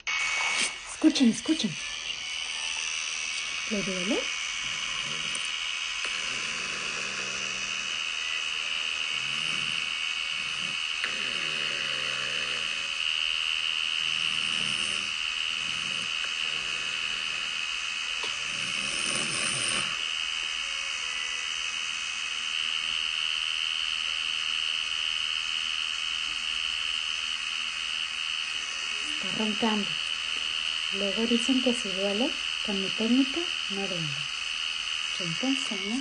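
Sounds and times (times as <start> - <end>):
tattoo machine whine: 0.0 - 36.0
person snoring: 3.7 - 13.2, 14.0 - 20.1.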